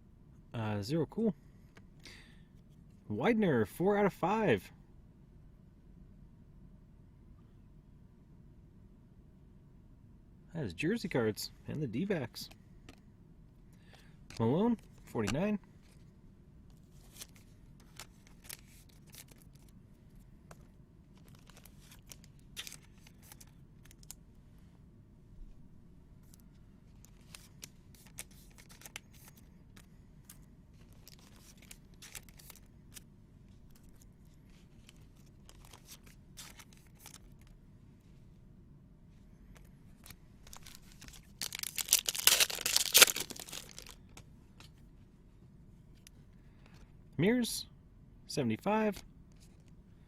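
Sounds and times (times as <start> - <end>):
cards being handled: 13.8 - 16.1, 16.7 - 24.2, 26.2 - 37.6, 39.5 - 44.9
card packs being torn open: 17.0 - 19.7, 21.2 - 24.2, 27.0 - 29.4, 30.2 - 33.0, 35.2 - 37.5, 40.0 - 44.0.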